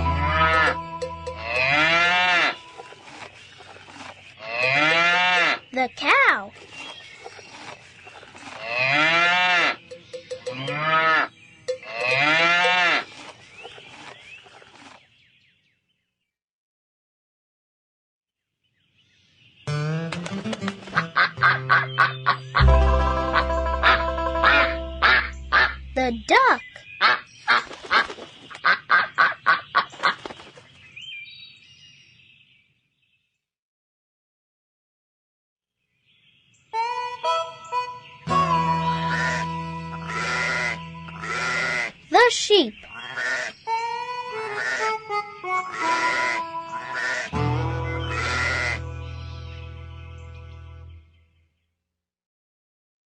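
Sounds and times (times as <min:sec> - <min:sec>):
high bird calls: 0:00.0 - 0:15.7, 0:20.9 - 0:22.7, 0:23.4 - 0:31.8, 0:36.7 - 0:44.9, 0:45.7 - 0:51.2
cow mooing: 0:00.1 - 0:02.7, 0:04.4 - 0:05.6, 0:08.6 - 0:09.8, 0:10.5 - 0:13.0, 0:40.1 - 0:41.9
duck quacking: 0:00.2 - 0:00.8, 0:20.8 - 0:25.9, 0:38.8 - 0:42.0, 0:43.0 - 0:43.5, 0:44.4 - 0:49.1.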